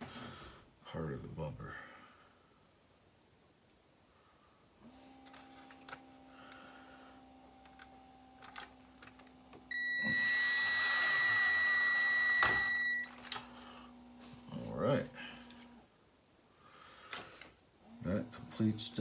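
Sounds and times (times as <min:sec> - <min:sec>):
small electric motor whine: 0:04.8 - 0:14.5.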